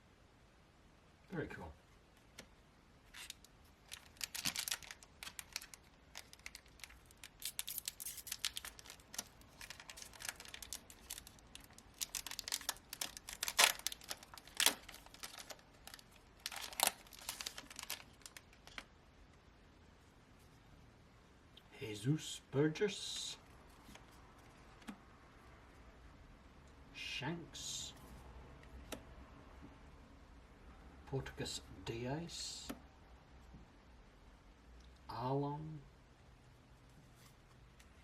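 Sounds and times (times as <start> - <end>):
foil pack tearing and crinkling: 3.2 - 18.8.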